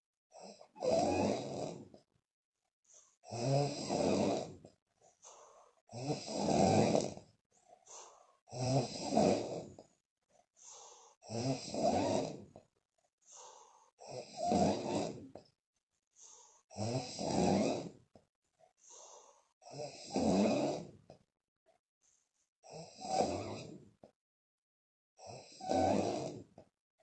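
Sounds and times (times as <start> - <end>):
woman snoring with puffing lips: 0.3 - 2.1, 3.3 - 4.7, 5.9 - 7.3, 8.5 - 9.9, 11.2 - 12.7, 14.0 - 15.5, 16.7 - 18.2, 19.6 - 21.2, 22.6 - 24.2, 25.2 - 26.7
faint breaths: 5.0 - 5.8, 7.5 - 8.5, 10.3 - 11.2, 13.0 - 14.5, 18.6 - 19.6.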